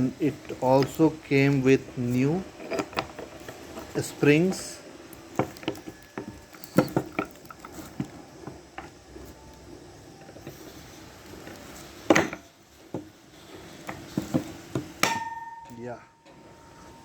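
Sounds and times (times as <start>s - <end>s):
metal brake parts clinking: 13.7s - 17.0s.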